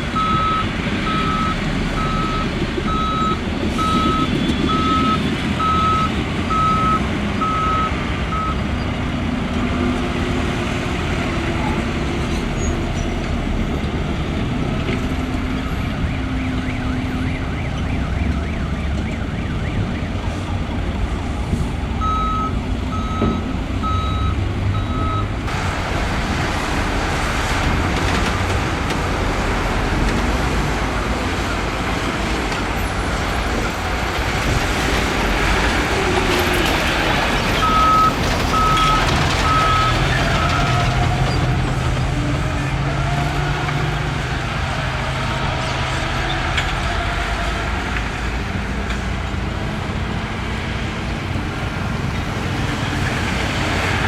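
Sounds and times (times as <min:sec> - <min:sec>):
heavy diesel engine rumble: 0:00.0 - 0:54.0
reversing alarm beeping: 0:00.2 - 0:08.6, 0:22.0 - 0:25.3, 0:37.6 - 0:40.9.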